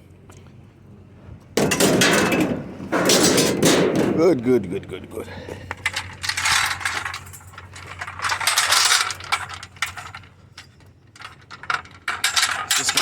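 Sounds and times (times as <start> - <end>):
scrap metal clinking: 1.6 - 4.3, 5.6 - 13.0.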